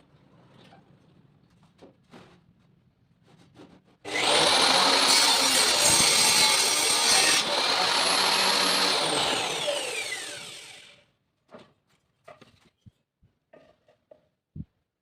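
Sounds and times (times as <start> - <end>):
saw motor whining: 4.1 - 11.0
table saw cutting wood: 4.1 - 11.0.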